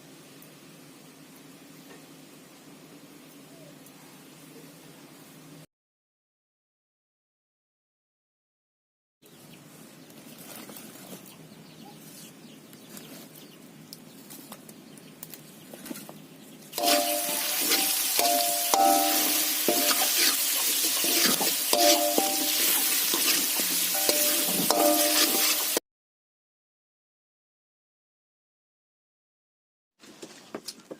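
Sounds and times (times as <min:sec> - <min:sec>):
food sizzling in hot oil: 0:16.8 - 0:25.8.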